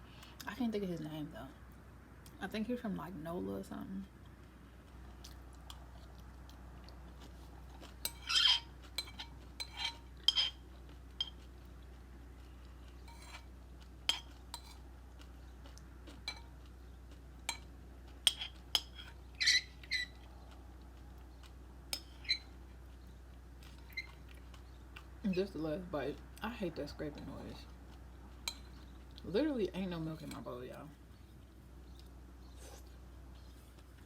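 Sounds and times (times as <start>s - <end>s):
spoon scraping cereal bowl: 13.0s - 14.8s.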